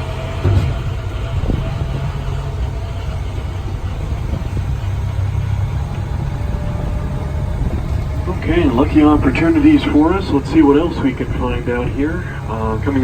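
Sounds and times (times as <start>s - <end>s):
road noise: 0.0s - 13.0s
tram engine droning: 0.0s - 13.0s.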